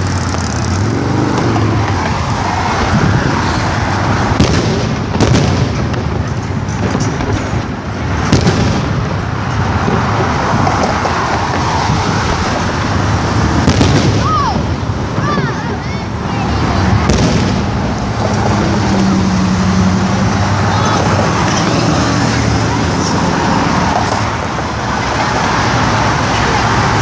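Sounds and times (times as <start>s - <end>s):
firework bangs: 0.0s - 19.2s
fireworks crackling: 0.0s - 19.5s
whistling fireworks: 13.6s - 15.9s.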